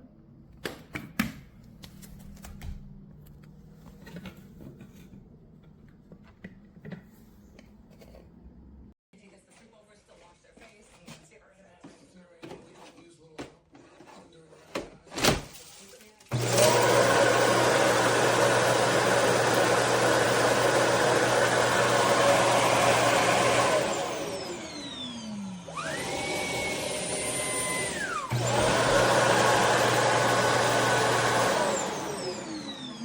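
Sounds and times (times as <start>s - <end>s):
cordless vacuum motor running: 16.3s - 33.0s.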